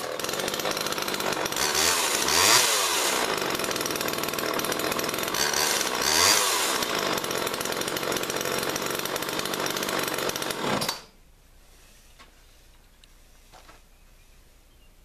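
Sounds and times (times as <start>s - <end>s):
chainsaw running and revving: 0.0s - 11.1s.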